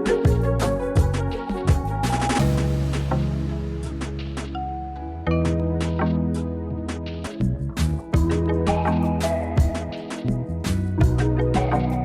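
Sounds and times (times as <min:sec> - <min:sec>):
drum beat: 0:00.1 - 0:04.6, 0:08.2 - 0:08.9.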